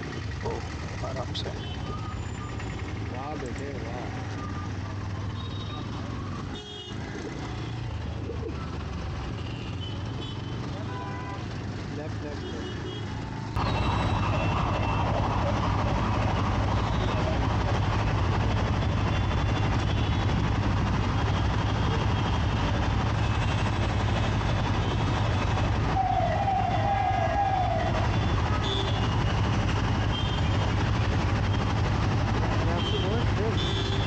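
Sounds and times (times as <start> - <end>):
road noise: 0.0 - 34.0
motorcycle engine drone: 12.9 - 34.0
wavering siren-like tone: 25.9 - 29.6.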